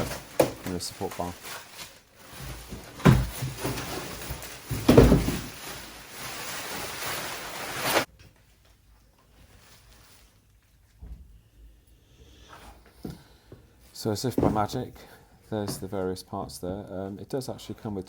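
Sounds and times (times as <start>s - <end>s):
packaging rustling: 0.0s - 8.1s
heavy thumps: 2.3s - 5.8s, 14.2s - 15.0s.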